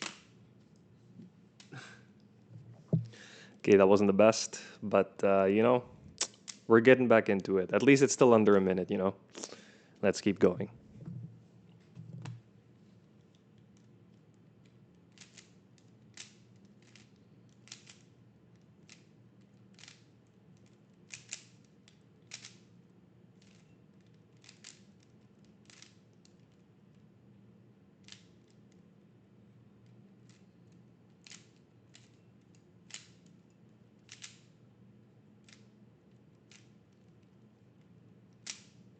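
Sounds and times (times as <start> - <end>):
faint steady hum: 0.0 - 38.9
puzzle cube layers clicking: 15.1 - 18.0, 20.6 - 21.6, 34.0 - 34.5.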